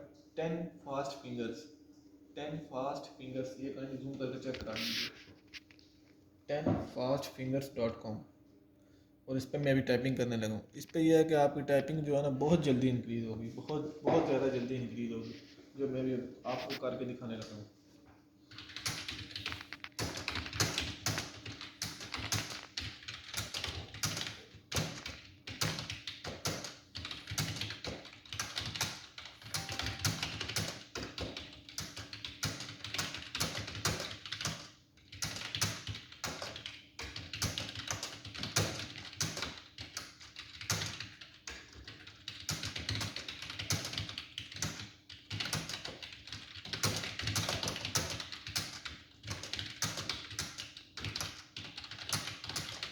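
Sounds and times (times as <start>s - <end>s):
fast typing on computer keyboard: 18.5s - 52.9s.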